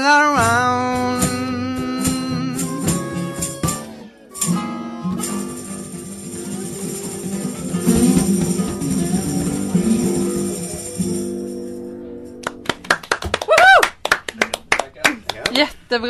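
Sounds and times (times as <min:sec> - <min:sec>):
strummed acoustic guitars: 0:00.0 - 0:13.1
tambourine: 0:02.0 - 0:11.8.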